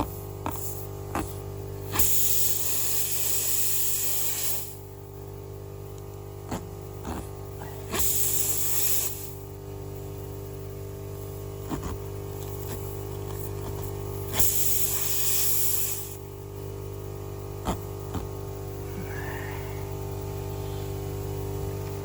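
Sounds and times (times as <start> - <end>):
steady electrical hum: 0.0 - 22.0
air hissing out of a tire: 1.9 - 4.8, 7.6 - 9.4, 14.3 - 16.2, 18.9 - 19.9.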